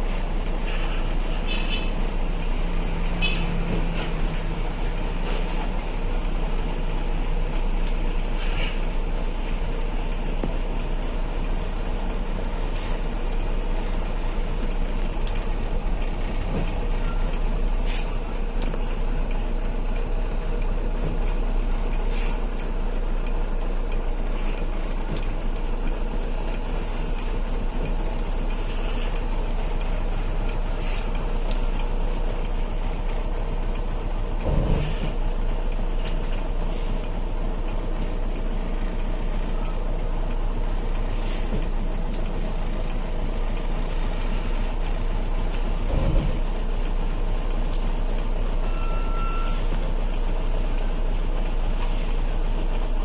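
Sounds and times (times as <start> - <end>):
truck engine and road noise: 0.0 - 53.0.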